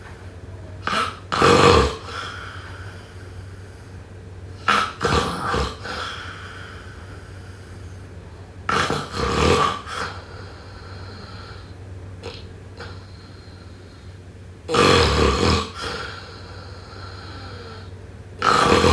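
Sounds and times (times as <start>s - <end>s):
person snoring loudly: 0.8s - 3.1s, 4.6s - 7.7s, 8.7s - 14.0s, 14.7s - 18.9s
person snorting: 0.8s - 3.2s, 4.6s - 7.9s, 8.7s - 14.0s, 14.7s - 18.9s.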